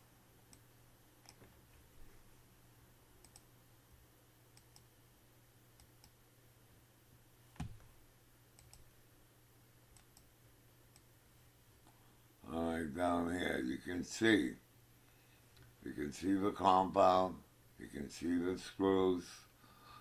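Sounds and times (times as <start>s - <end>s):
low steady hum: 0.0s - 20.0s
computer mouse clicks: 0.5s - 1.5s, 3.2s - 3.5s, 4.5s - 4.9s, 5.8s - 6.2s, 8.6s - 8.9s, 9.9s - 10.3s.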